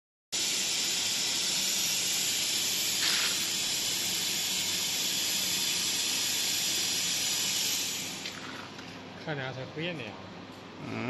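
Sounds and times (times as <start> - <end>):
plasma torch hissing: 0.4 - 8.4.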